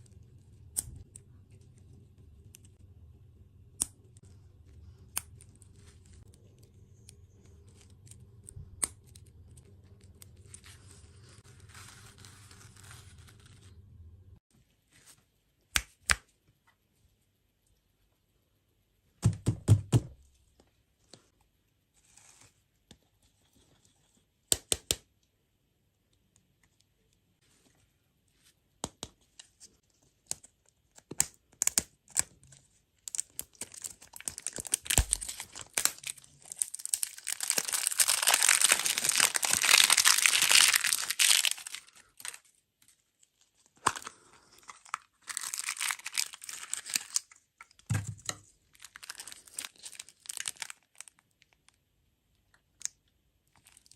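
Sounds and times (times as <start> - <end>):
wrapping tearing and crinkling: 8.9 - 13.8, 30.3 - 51.8, 53.5 - 53.9.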